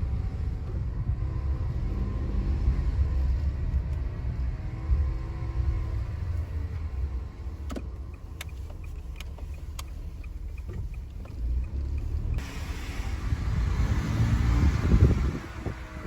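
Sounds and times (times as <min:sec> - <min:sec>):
drivetrain rumble: 0:00.0 - 0:16.0
light clicks: 0:07.6 - 0:12.4.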